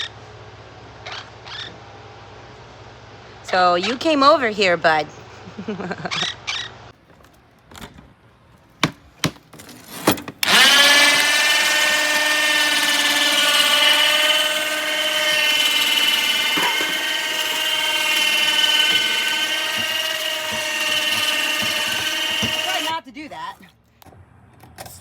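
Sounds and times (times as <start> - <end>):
power sander whining: 10.4 - 23.0.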